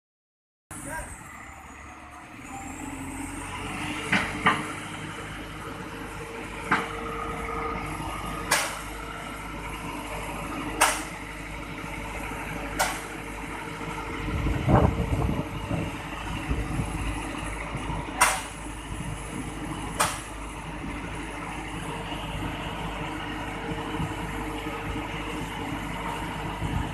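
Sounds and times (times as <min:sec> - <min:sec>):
heavy machine engine running: 0:00.7 - 0:26.9
loud low rumble: 0:13.5 - 0:20.0.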